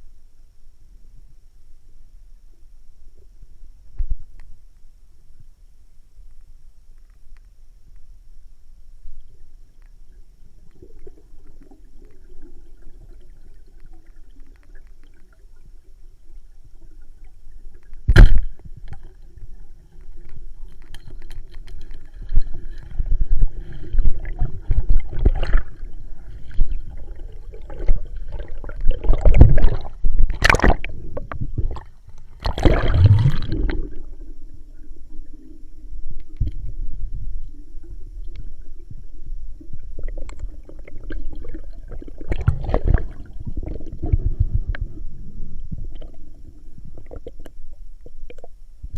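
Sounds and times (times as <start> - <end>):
faint steady hum: 0.0 - 48.9
water sloshing and gurgling: 9.1 - 48.9
low rumble: 22.6 - 48.9
bubbling or splashing bursts: 22.9 - 34.2, 39.9 - 48.5.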